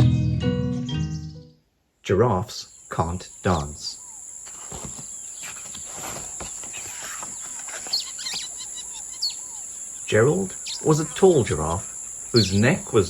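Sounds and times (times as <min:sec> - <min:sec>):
bird chirps: 0:02.6 - 0:13.0
high-pitched insect drone: 0:02.6 - 0:13.0.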